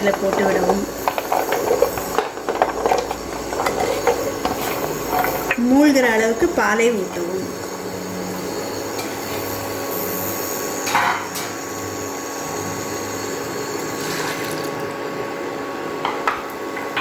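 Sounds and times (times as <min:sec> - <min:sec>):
milk pouring: 0:13.6 - 0:14.8.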